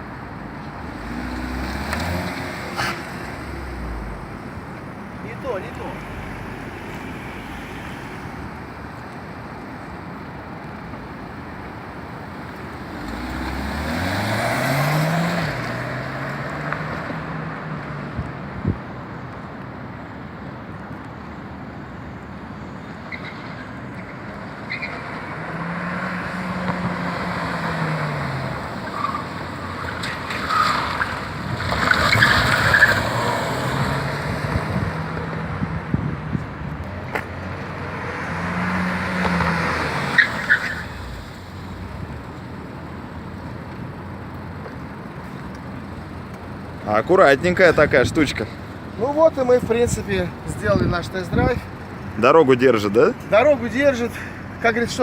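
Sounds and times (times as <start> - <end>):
tyre and road noise: 0.0 - 55.0
car engine revving: 0.8 - 8.4, 12.2 - 17.5, 24.9 - 35.6, 37.6 - 42.3.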